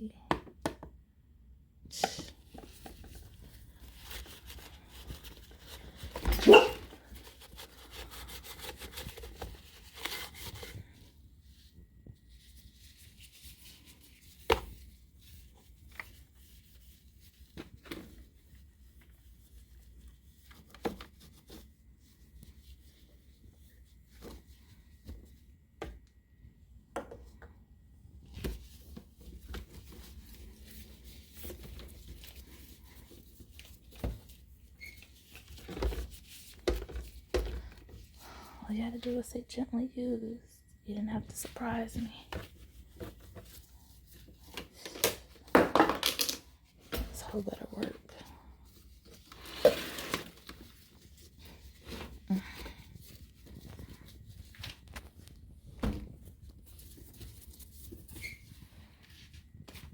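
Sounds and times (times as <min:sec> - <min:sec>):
plastic parts knocking and clicking: 0:44.8 - 0:46.4.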